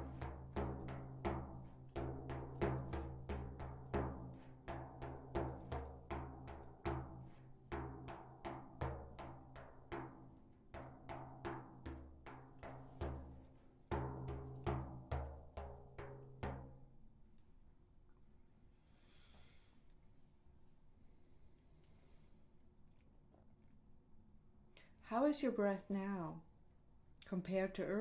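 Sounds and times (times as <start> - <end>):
deep drum beating: 0.0 - 16.8.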